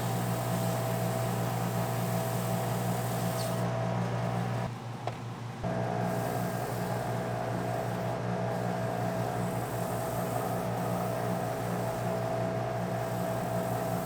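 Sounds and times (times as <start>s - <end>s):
wood lathe motor hum: 5.7s - 14.0s.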